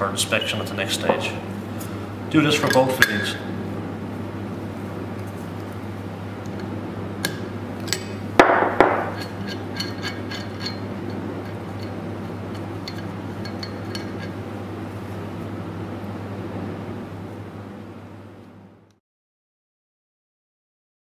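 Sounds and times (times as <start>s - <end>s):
spanner clinking on metal fitting: 9.1s - 14.4s.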